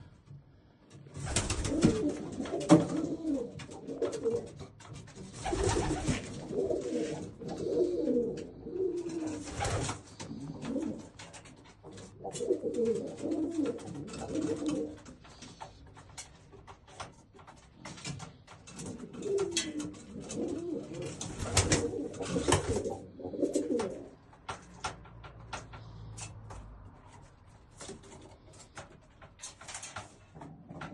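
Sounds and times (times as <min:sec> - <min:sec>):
pigeons cooing: 0:01.2 - 0:16.3, 0:17.6 - 0:24.2, 0:30.1 - 0:30.9.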